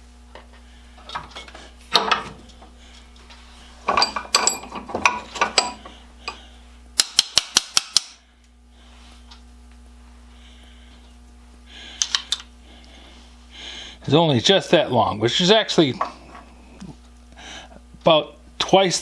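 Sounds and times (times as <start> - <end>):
metal tools clinking and rattling: 3.9 - 6.4.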